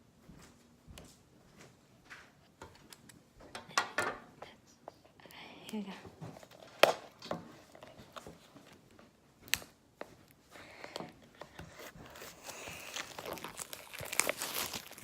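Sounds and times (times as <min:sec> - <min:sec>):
plastic packaging crinkling: 0:11.7 - 0:15.0.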